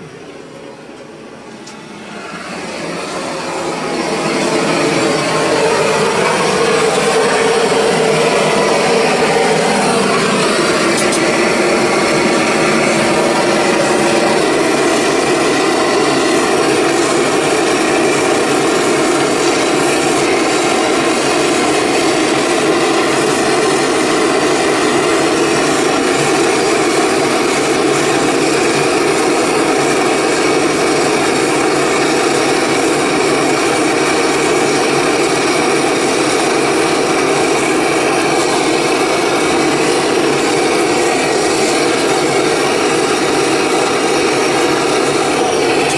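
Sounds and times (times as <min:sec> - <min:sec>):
gas torch roaring: 0:00.0 - 0:45.9.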